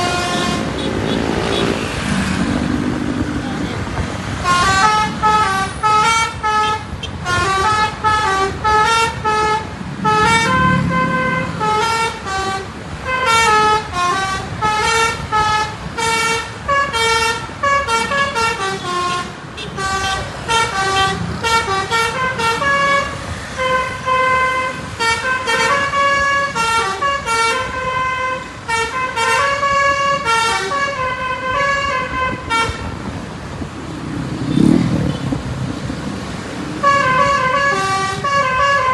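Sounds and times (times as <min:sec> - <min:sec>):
multi-tone bus horn tune: 0:00.0 - 0:01.8, 0:04.4 - 0:33.1, 0:36.8 - 0:38.9.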